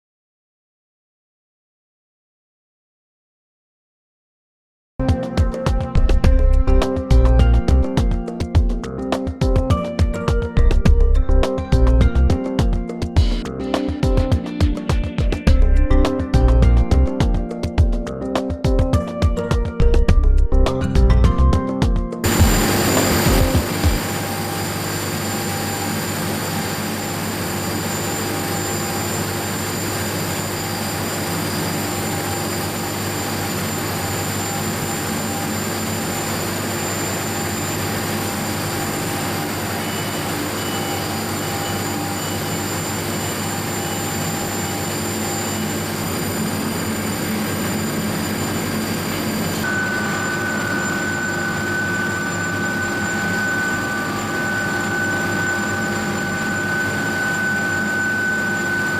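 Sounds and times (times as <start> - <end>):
high steady whine: 5.0 - 58.9
industrial furnace hum: 22.2 - 58.6.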